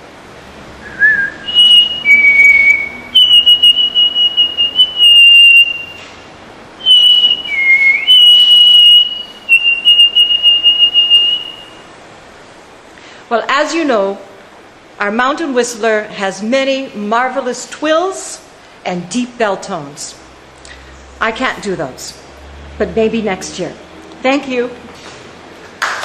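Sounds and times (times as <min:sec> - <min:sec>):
person whistling bird song: 0:00.8 - 0:06.1, 0:06.8 - 0:11.8.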